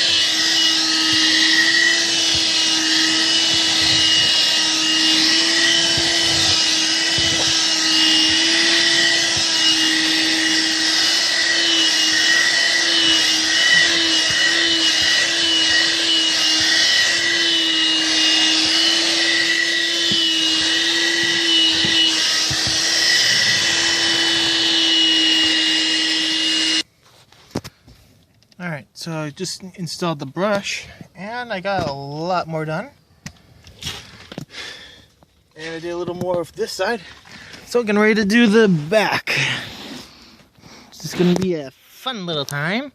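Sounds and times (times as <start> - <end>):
handheld vacuum running: 0.0 - 26.8.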